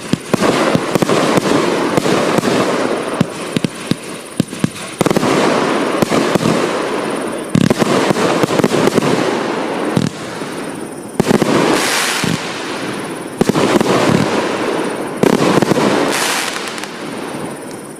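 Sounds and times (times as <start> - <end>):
firework bangs and crackling: 0.0 - 17.9.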